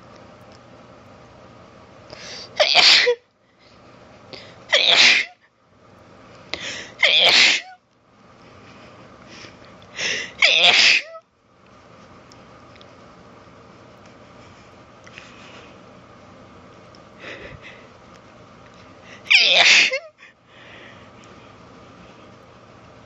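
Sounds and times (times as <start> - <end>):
woman sneezing: 2.6 - 3.2, 4.7 - 5.4, 7.0 - 7.8, 10.4 - 11.2, 19.3 - 20.1.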